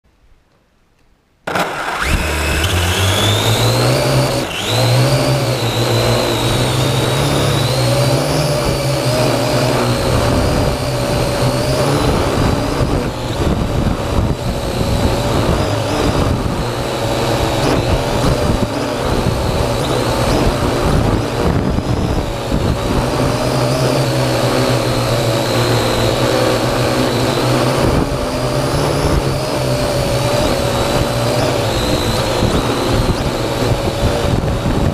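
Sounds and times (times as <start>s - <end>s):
drone motors whining: 1.5s - 34.9s.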